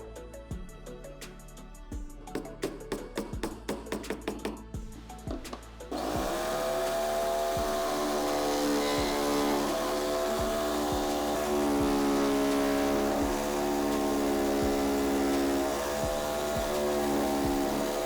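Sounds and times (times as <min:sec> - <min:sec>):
power tool motor running: 0:05.9 - 0:18.0.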